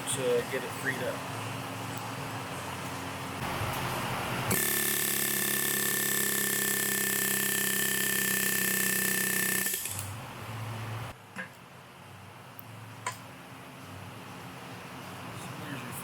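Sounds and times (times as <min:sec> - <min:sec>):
pneumatic air tool running: 0:04.5 - 0:10.2.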